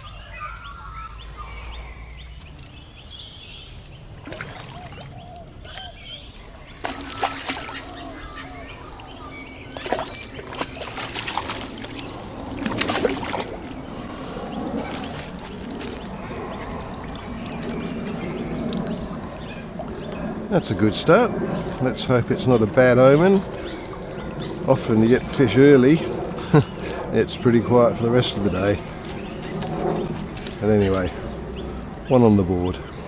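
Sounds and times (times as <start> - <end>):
birds calling: 0.0 - 33.0
fish splashing in water: 4.2 - 5.9, 6.8 - 20.0.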